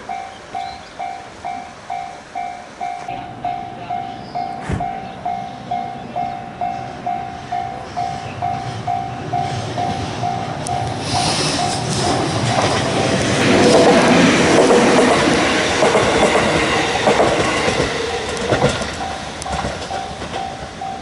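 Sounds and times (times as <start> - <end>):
electric train running: 0.0 - 21.0
train wheel clatter: 6.6 - 21.0.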